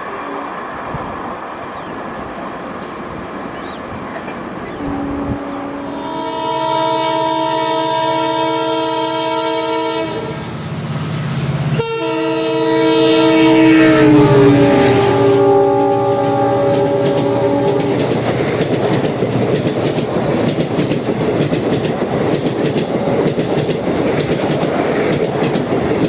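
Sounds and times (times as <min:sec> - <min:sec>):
locomotive horn chord blasts: 0:04.8 - 0:10.5, 0:11.8 - 0:18.1
clack of train wheels: 0:14.0 - 0:26.0.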